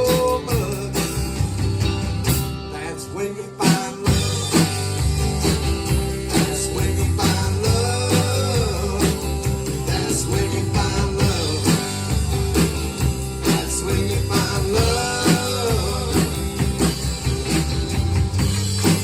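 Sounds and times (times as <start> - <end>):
bass: 0.0 - 19.0
drum beat: 3.7 - 19.0.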